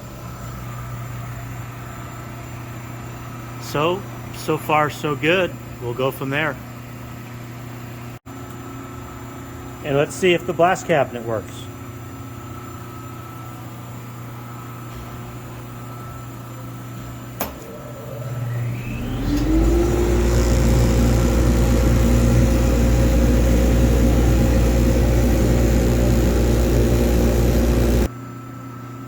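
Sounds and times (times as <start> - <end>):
machine hum: 0.0 - 28.3
switch click: 17.4 - 17.7
motor whining: 17.4 - 28.1.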